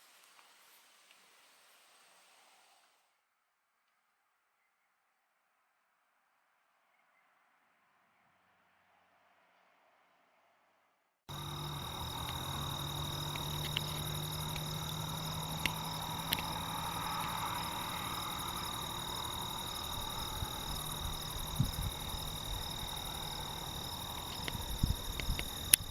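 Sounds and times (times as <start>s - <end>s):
constant high-pitched tone: 11.3s - 25.9s
faint clicks: 11.3s - 25.9s
low hum: 11.3s - 25.9s
trilling animal calls: 11.3s - 25.9s.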